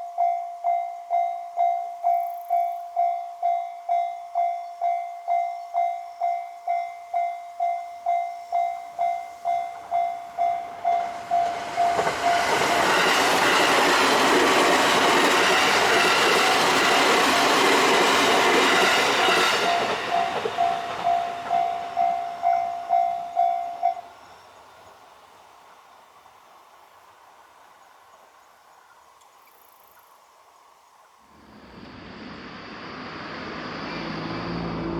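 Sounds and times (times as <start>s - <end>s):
railroad crossing bell ringing: 0.0s - 24.6s
train rushing past: 8.9s - 25.5s, 31.4s - 34.9s.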